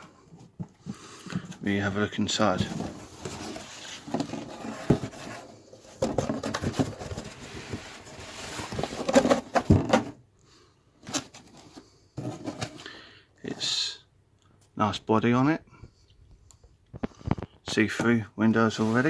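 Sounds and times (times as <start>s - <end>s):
cardboard and plastic packaging rustling: 0.0s - 10.2s, 11.0s - 12.9s.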